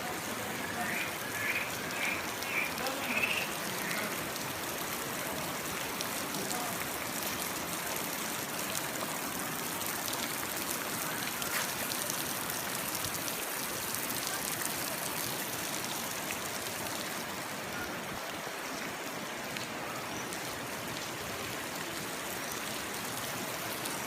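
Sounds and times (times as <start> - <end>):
waterfall rushing and splashing: 0.0 - 24.0
faint voice-like sounds: 5.1 - 7.0.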